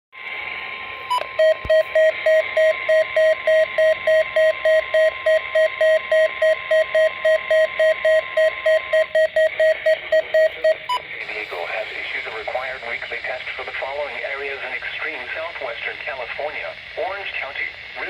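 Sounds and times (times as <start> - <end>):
radio broadcast hiss: 9.6 - 18.0.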